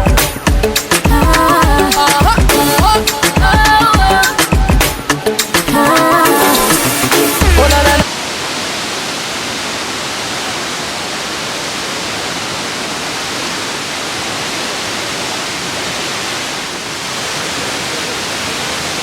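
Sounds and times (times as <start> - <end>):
background music: 0.0 - 8.1
waterfall rushing: 0.0 - 19.0.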